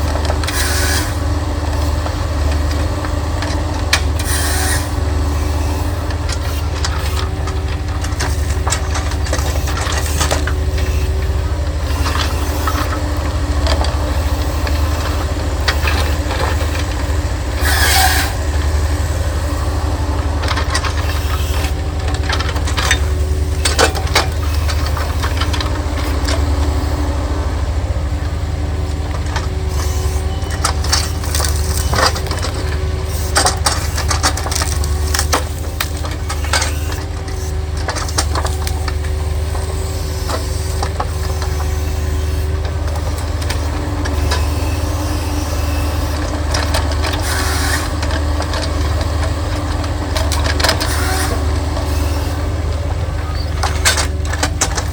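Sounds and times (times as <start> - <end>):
excavator engine running: 0.0 - 54.9
wood cracking and snapping: 30.5 - 39.6.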